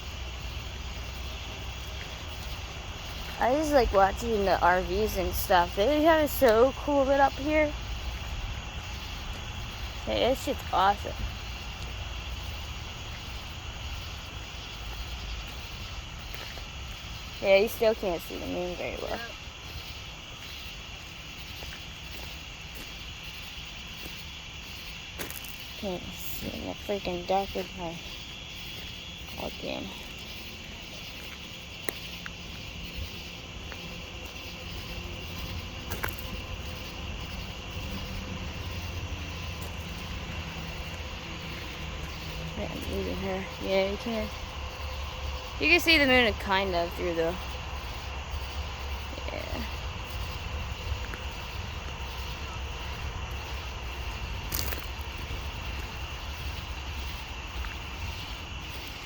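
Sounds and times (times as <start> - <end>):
crickets chirring: 0.0 - 59.0
wind buffeting microphone: 25.7 - 59.0
low rumble: 27.9 - 59.0.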